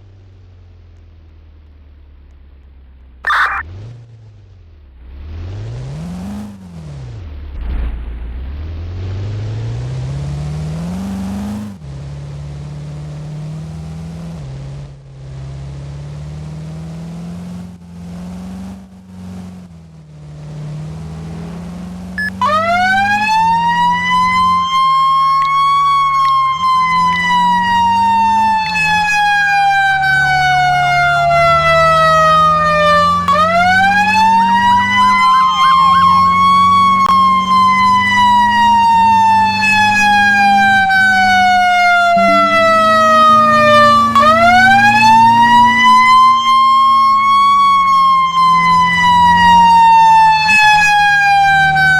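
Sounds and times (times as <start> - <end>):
siren wailing: 3.2 - 3.6, 22.2 - 51.9
fire truck engine accelerating: 3.3 - 51.9.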